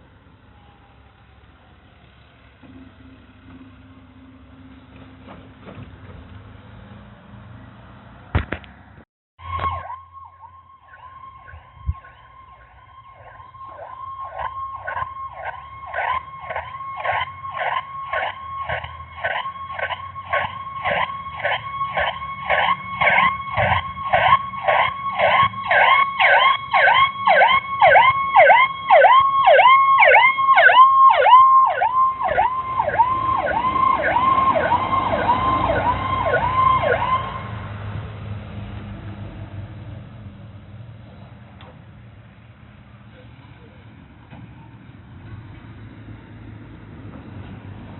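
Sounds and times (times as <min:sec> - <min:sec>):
fast yelping siren: 0:09.4 - 0:37.4.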